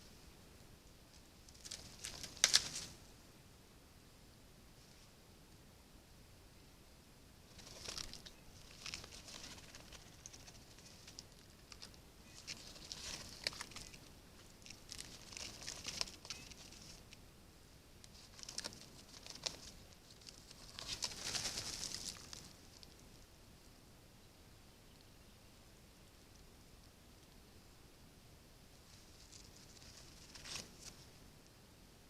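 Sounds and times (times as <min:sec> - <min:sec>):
birds rustling at feeder: 0:01.1 - 0:03.1, 0:07.5 - 0:17.2, 0:18.0 - 0:23.2, 0:28.7 - 0:31.3.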